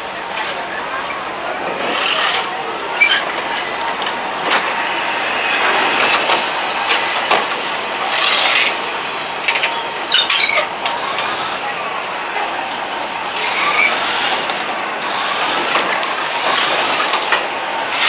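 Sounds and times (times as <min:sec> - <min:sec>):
high wheel squeal: 0:13.3 - 0:14.4.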